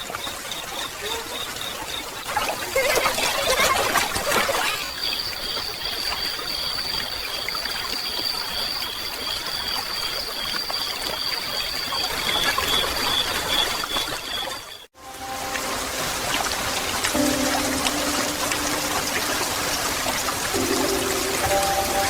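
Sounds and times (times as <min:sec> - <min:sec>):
rain: 0:00.0 - 0:22.0
pulsing high tone: 0:15.0 - 0:22.0
steady high tone: 0:15.0 - 0:22.0
water trickling and dripping: 0:15.0 - 0:22.0.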